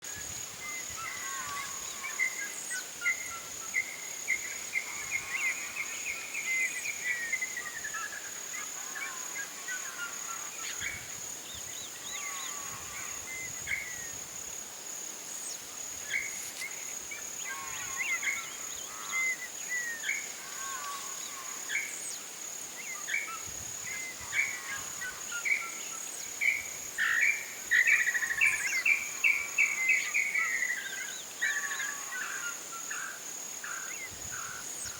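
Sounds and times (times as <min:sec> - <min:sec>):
high insect drone: 0:00.1 - 0:34.9
wild birds calling: 0:16.0 - 0:22.2, 0:22.8 - 0:34.9.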